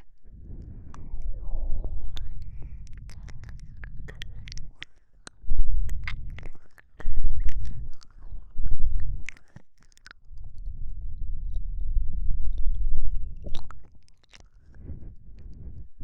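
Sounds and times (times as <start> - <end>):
breath on microphone: 0.0 - 9.5, 14.4 - 16.0
wet mouth clicks and smacks: 0.0 - 10.8, 12.5 - 15.8.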